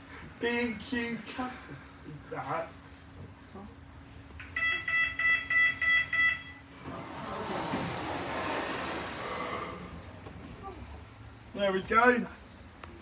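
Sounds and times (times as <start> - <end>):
lift beeper beeping: 4.6 - 6.6.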